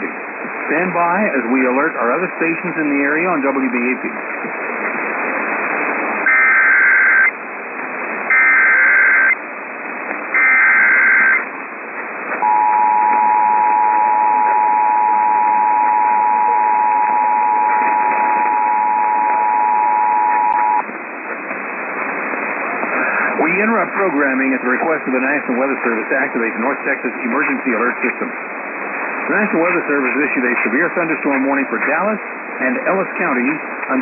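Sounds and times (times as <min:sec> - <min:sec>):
radio hiss: 0:00.0 - 0:34.0
two-tone alert signal: 0:12.4 - 0:20.8.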